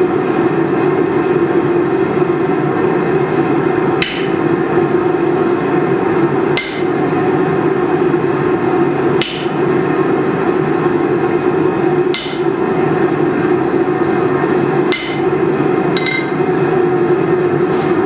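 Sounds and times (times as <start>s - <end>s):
hammer striking metal on anvil: 4.0s - 4.4s, 6.6s - 7.0s, 9.2s - 9.6s, 12.2s - 12.5s, 14.9s - 15.3s, 16.0s - 16.4s.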